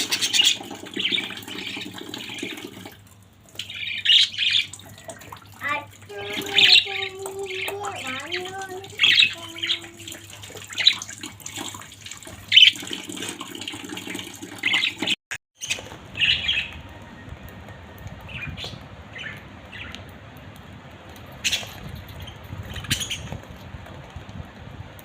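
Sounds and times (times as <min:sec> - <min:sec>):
budgerigars chirping: 0:15.6 - 0:16.8.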